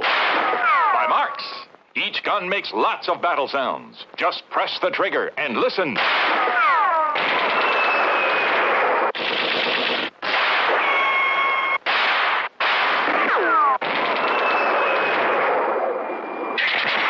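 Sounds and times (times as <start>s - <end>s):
falling whistle: 10.8s - 11.8s.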